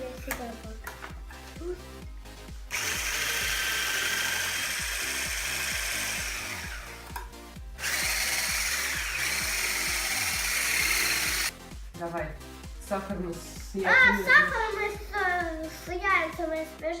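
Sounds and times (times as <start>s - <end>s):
electric hand mixer running: 2.7s - 11.5s.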